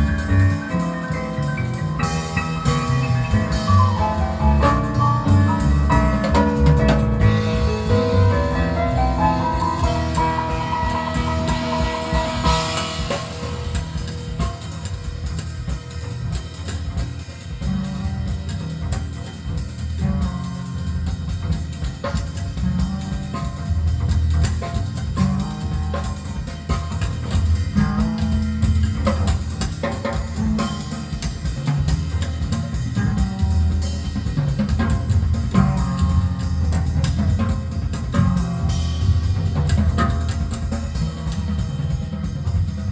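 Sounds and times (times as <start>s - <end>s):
guitar: 0.0s - 21.5s
bass: 0.0s - 42.9s
drum kit: 0.0s - 42.9s.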